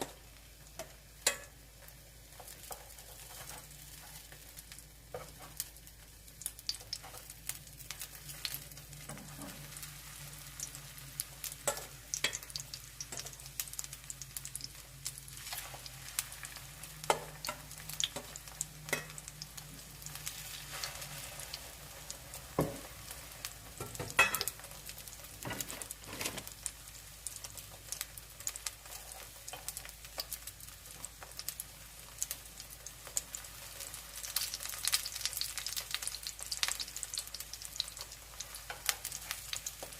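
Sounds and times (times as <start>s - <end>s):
pancakes sizzling in oil: 0.0s - 39.9s.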